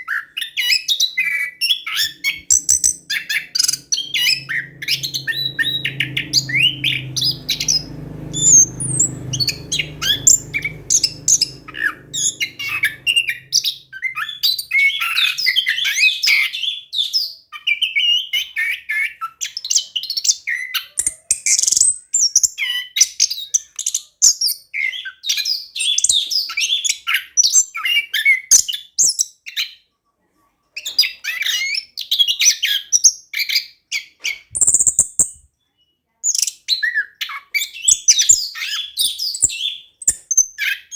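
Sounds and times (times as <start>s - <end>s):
thrush singing chirps and trills: 0.4s - 15.7s
low hum: 2.2s - 13.8s.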